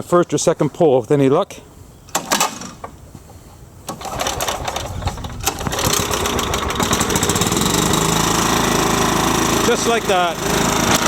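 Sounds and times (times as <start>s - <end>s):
mower engine running: 3.9s - 11.0s
pull-start clatter: 3.9s - 11.0s.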